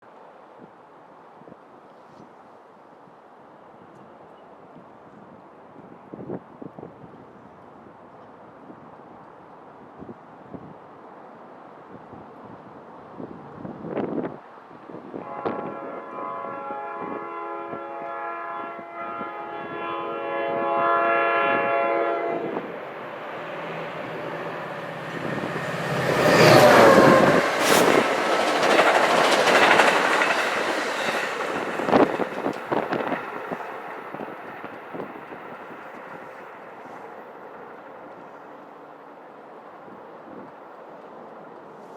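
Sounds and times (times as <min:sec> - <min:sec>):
train rumble: 0:07.1 - 0:41.9
train horn blast: 0:15.1 - 0:22.7, 0:24.0 - 0:28.0
train wheels clattering on rails: 0:22.7 - 0:38.6.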